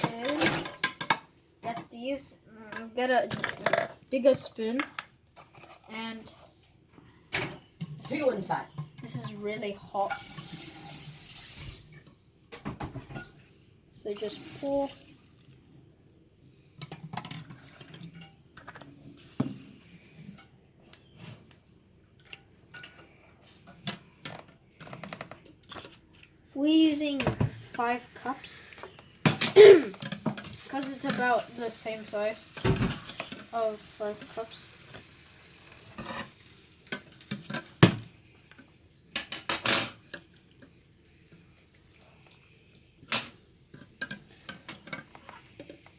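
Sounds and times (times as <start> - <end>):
dishes and utensils clinking: 0.0 - 1.8.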